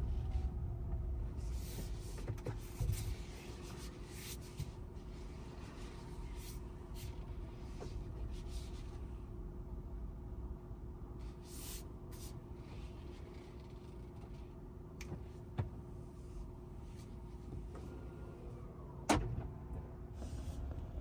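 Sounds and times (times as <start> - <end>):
low cabin hum: 0.0 - 11.3.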